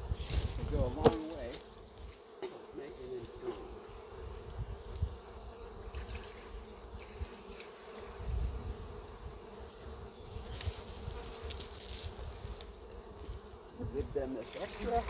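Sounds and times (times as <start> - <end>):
bees buzzing: 0.0 - 15.0
crackly handling rustle: 0.2 - 3.6, 10.3 - 13.4.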